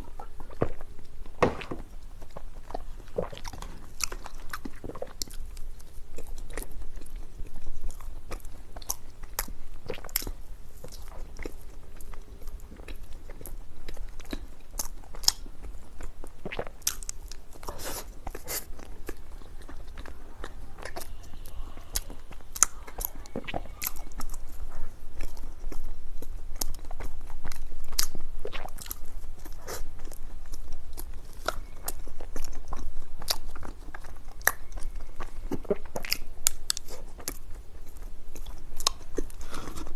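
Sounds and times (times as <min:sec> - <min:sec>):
person chewing dessert: 0:00.0 - 0:39.9.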